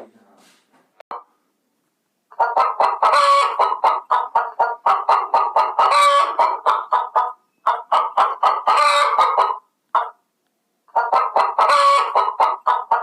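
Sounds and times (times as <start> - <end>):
chicken clucking: 2.3 - 10.2, 10.9 - 13.0
chicken squawk: 2.3 - 10.2, 10.9 - 13.0.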